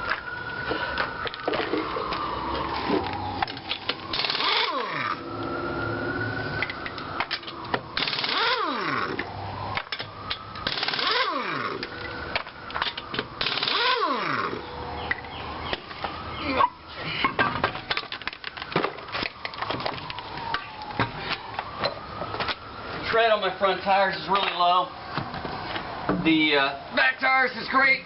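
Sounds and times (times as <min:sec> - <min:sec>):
pneumatic impact wrench: 0:04.1 - 0:05.2, 0:08.0 - 0:09.2, 0:10.6 - 0:11.8, 0:13.4 - 0:14.6.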